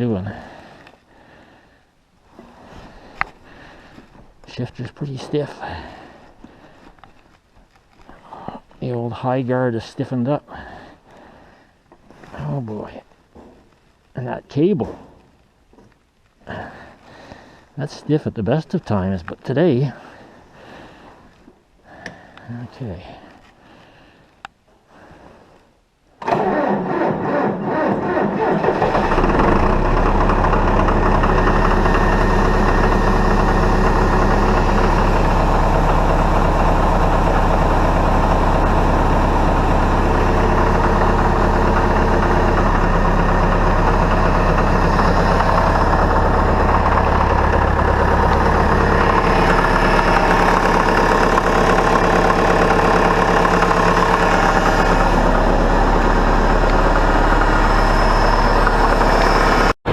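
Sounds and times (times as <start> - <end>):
diesel engine cranking: 26.2 - 59.9
diesel engine idling: 27.7 - 59.9.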